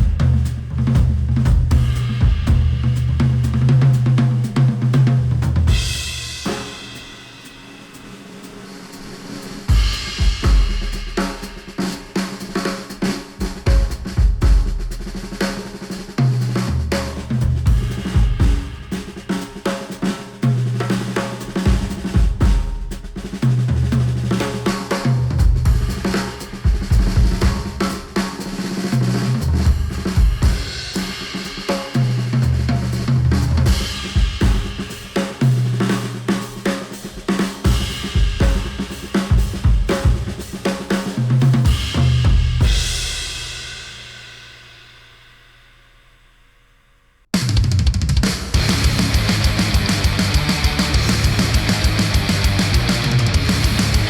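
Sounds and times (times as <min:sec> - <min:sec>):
drum-heavy music through headphones: 0:00.0 - 0:02.7, 0:05.6 - 0:20.4, 0:21.0 - 0:23.6, 0:24.6 - 0:28.7, 0:33.6 - 0:40.9, 0:47.4 - 0:54.0.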